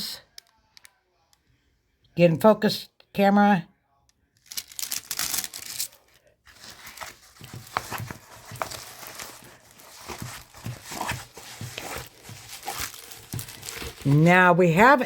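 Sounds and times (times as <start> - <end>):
packaging crinkling: 4.4 - 14.4.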